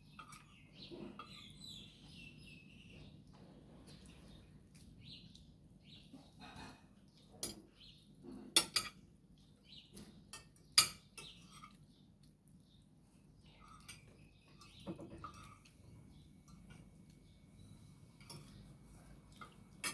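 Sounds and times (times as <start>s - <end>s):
cutlery and dishes clinking: 0.1s - 1.5s, 6.4s - 9.0s, 10.3s - 11.8s, 13.6s - 15.8s, 18.2s - 18.7s, 19.3s - 19.9s.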